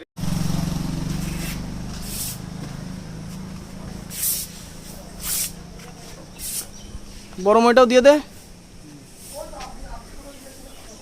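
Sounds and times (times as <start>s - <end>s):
vehicle engine running: 0.2s - 11.0s
short hissing noises: 1.2s - 2.5s, 4.1s - 5.6s, 6.4s - 7.4s, 8.3s - 9.7s.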